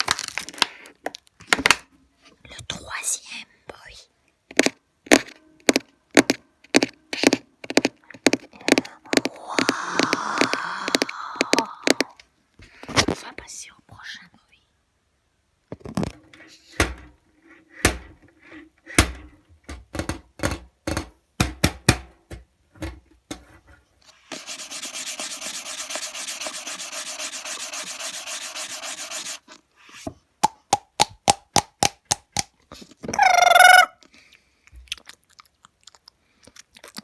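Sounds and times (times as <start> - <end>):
scratchy rubbing: 24.1 - 29.6.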